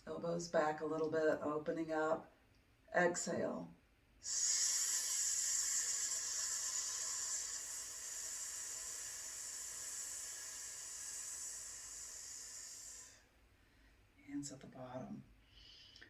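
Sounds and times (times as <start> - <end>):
woman's hissing exhale: 4.2 - 13.4.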